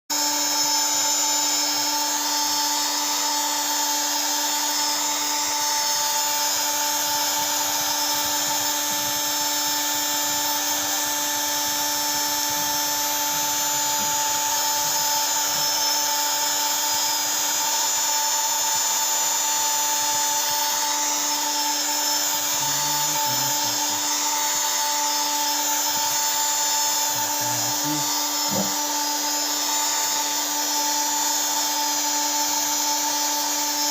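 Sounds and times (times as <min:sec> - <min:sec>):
small electric tool motor whine: 0:00.1 - 0:33.9.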